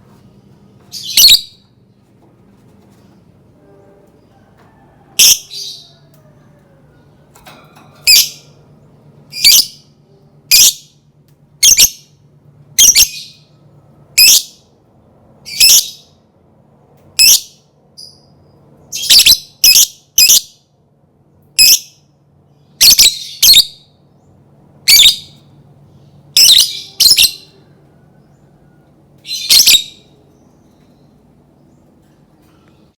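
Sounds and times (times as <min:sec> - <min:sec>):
faint steady hum: 0:00.0 - 0:33.0
lovebird high-pitched calls: 0:00.9 - 0:01.6, 0:05.2 - 0:06.1, 0:08.0 - 0:08.5, 0:09.3 - 0:09.9, 0:10.5 - 0:11.0, 0:11.6 - 0:12.1, 0:12.8 - 0:13.5, 0:14.2 - 0:14.7, 0:15.4 - 0:16.1, 0:17.2 - 0:18.3, 0:18.9 - 0:20.6, 0:21.6 - 0:22.0, 0:22.8 - 0:23.9, 0:24.8 - 0:25.4, 0:26.3 - 0:27.6, 0:29.2 - 0:30.1.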